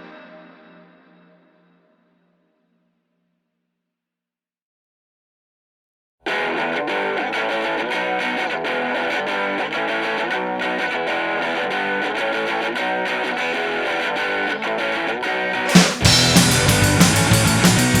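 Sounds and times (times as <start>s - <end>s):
rock music with electric guitar riff: 6.3s - 18.0s.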